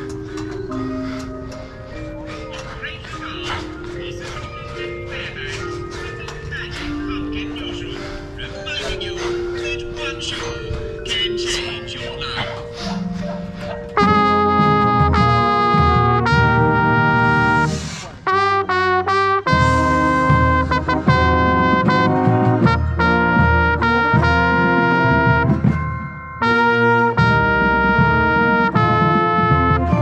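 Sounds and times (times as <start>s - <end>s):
trumpet playing: 12.8s - 30.0s
marching band brass playing: 12.9s - 30.0s.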